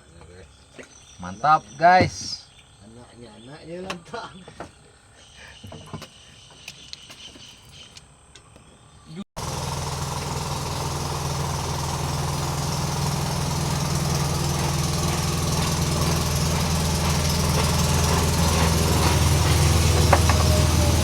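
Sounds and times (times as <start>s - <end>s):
small engine droning: 9.4s - 21.0s.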